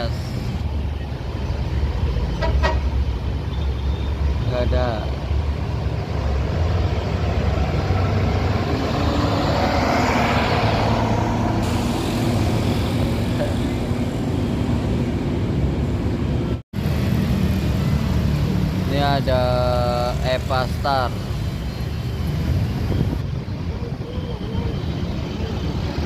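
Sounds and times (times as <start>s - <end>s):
road traffic: 0.0s - 26.0s
vehicle passing close by: 5.8s - 19.4s.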